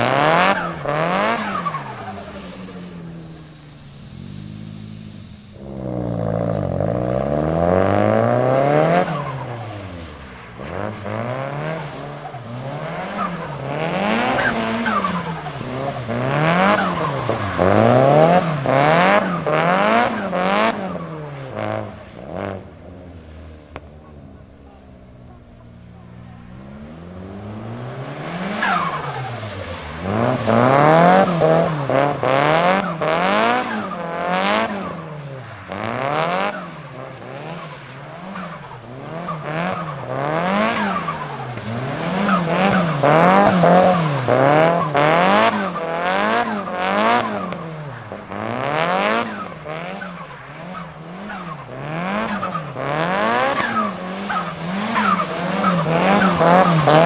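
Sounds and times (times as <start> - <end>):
sharp exhaust cracks: 0.0 - 34.2
turbocharged engine revving: 0.0 - 57.0.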